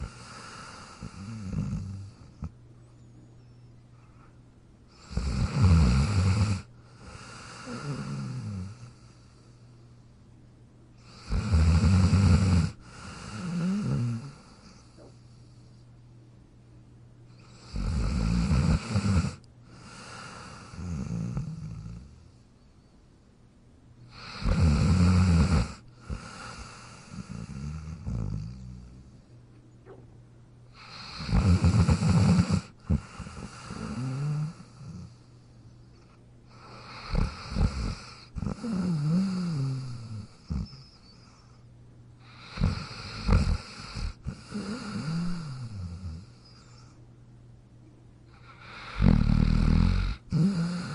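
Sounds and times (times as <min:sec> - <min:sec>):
dog snoring: 0:00.0 - 0:02.5, 0:04.9 - 0:09.6, 0:11.0 - 0:15.7, 0:17.3 - 0:22.5, 0:24.1 - 0:29.3, 0:30.7 - 0:41.6, 0:42.2 - 0:47.0, 0:48.3 - 0:50.9.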